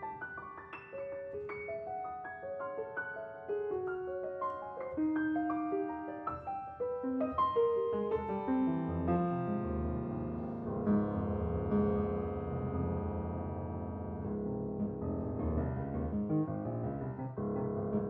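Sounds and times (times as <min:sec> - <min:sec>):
solo piano: 0:00.0 - 0:18.0.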